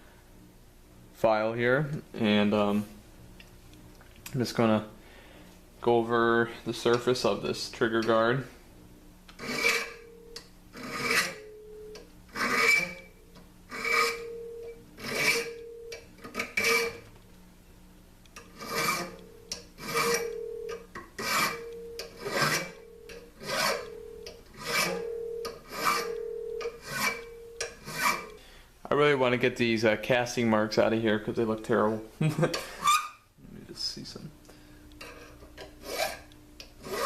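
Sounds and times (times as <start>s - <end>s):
hand file rasping on metal: 9.4s - 10.0s, 10.8s - 11.4s, 12.4s - 13.0s, 13.8s - 14.2s, 18.6s - 19.2s, 21.2s - 21.6s, 22.2s - 22.8s, 23.4s - 23.9s, 24.6s - 25.0s, 25.7s - 26.2s, 26.8s - 28.4s, 35.1s - 37.0s.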